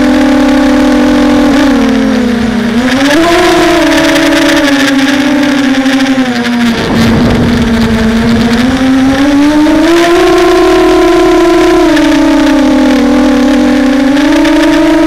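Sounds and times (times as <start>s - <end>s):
drone motors and propellers whining: 0.0s - 15.0s
wind noise rush: 2.5s - 12.4s.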